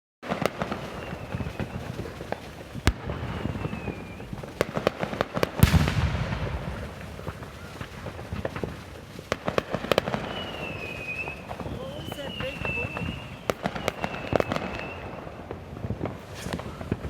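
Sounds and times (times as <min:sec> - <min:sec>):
fireworks blast with rumbling echo: 0:00.2 - 0:17.0
fireworks popping and banging: 0:00.2 - 0:17.0
faint falling whistles: 0:00.8 - 0:01.9, 0:03.4 - 0:04.3, 0:10.2 - 0:15.1.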